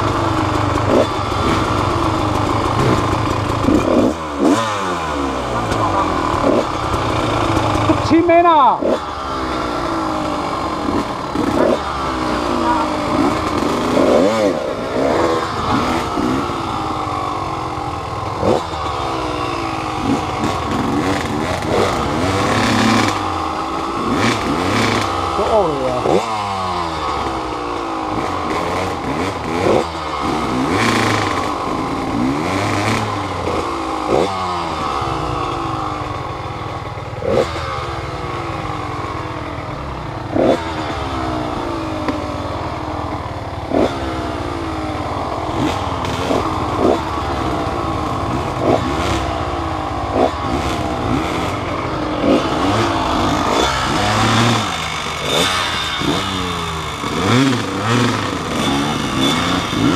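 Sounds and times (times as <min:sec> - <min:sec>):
vehicle engine revving: 0:00.0 - 0:59.9.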